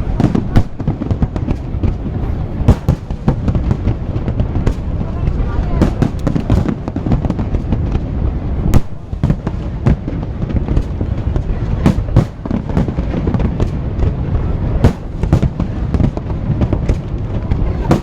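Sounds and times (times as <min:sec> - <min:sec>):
fireworks bangs: 0:00.0 - 0:18.0
low rumble: 0:00.0 - 0:18.0.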